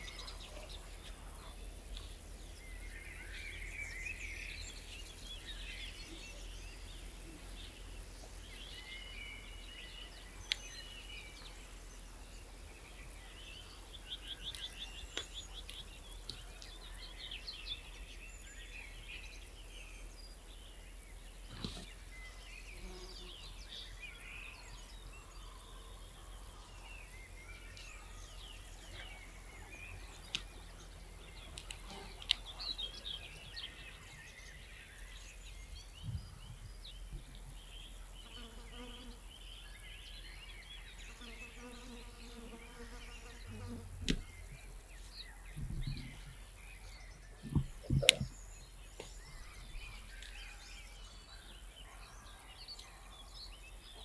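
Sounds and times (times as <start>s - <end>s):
small birds chirping: 0.0s - 54.0s
insect buzzing: 41.2s - 44.6s
sharp knocks and low thumps: 45.5s - 46.4s, 47.4s - 48.4s.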